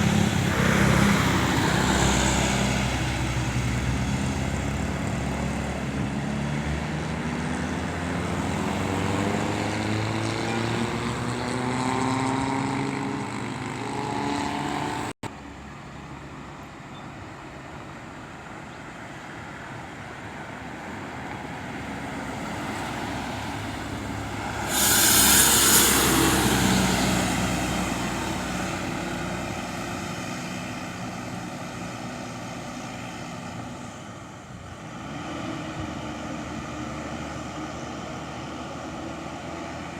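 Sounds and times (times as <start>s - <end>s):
bus engine accelerating: 0.0s - 39.9s
bus engine running: 0.0s - 39.9s
loud air hiss: 24.4s - 28.2s.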